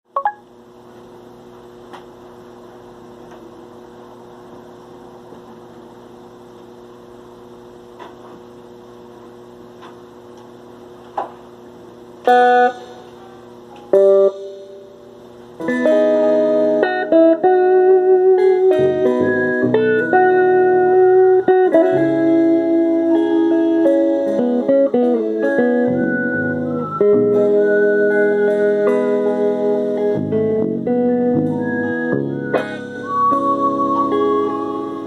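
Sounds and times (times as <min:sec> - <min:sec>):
guitar music: 0:12.2 - 0:35.0.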